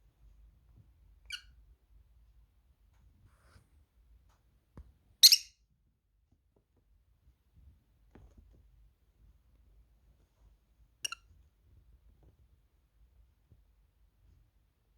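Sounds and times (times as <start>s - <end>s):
bird chirp: 5.2s - 5.5s.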